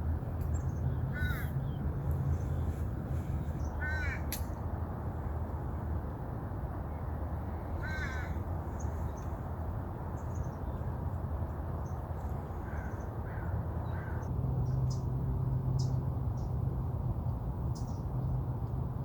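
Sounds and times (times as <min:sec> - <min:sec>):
crow cawing: 0:01.1 - 0:01.6, 0:03.8 - 0:04.3, 0:07.8 - 0:08.4, 0:12.6 - 0:14.3.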